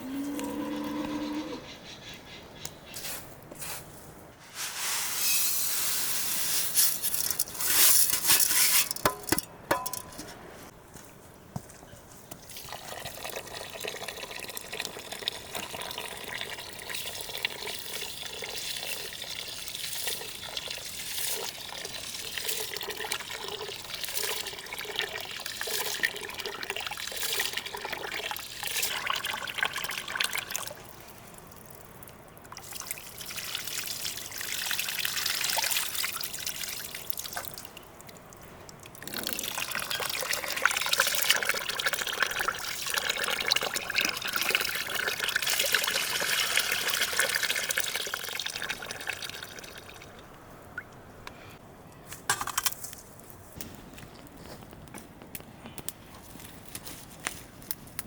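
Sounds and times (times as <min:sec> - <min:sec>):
water trickling and pouring: 0:12.5 - 0:50.3.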